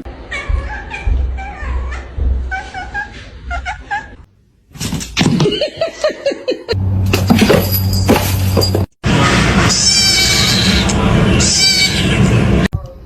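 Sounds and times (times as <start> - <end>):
people laughing: 5.4 - 6.8.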